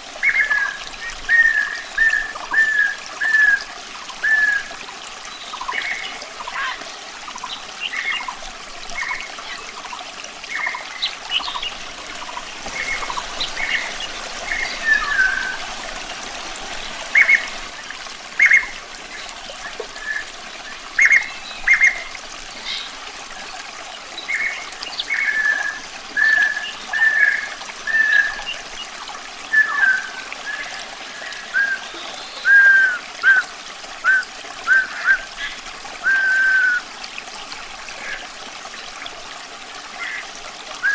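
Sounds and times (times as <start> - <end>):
water trickling: 0.0 - 40.9
nightingale singing: 10.5 - 15.6, 29.5 - 36.8.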